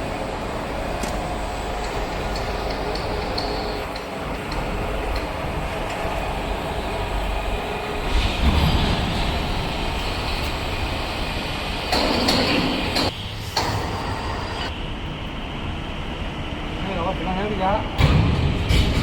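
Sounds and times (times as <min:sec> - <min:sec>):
heavy machinery running: 0:00.0 - 0:14.8.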